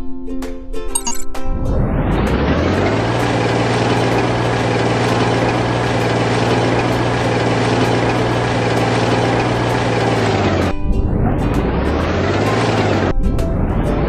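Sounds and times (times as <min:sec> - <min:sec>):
engine idling: 0:02.7 - 0:10.8.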